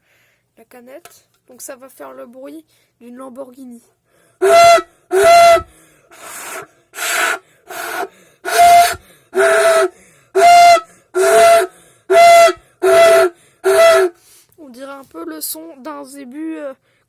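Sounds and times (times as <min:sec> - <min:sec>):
person blowing into drink can: 0:04.4 - 0:14.3.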